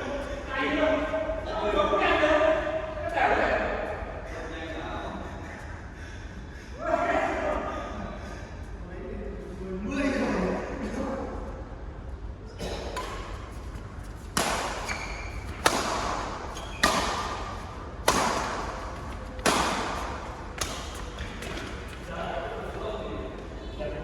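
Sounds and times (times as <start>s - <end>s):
racket striking shuttlecock: 12.7s - 13.5s, 14.2s - 21.8s.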